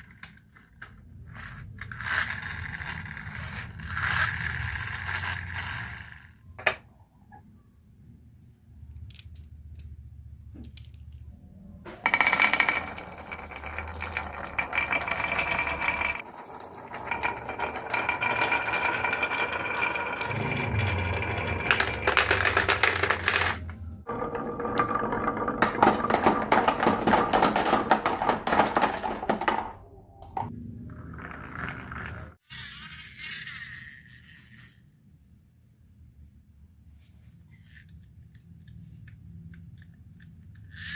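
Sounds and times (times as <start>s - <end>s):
marbles rattling down a marble run: 1.3s - 6.4s, 12.0s - 29.8s.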